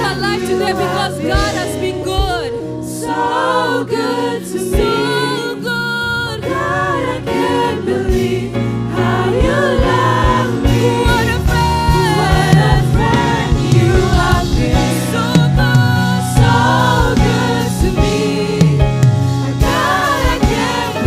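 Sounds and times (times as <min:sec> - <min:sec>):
choir singing: 0:00.0 - 0:21.0
live band bass and drums: 0:09.0 - 0:21.0.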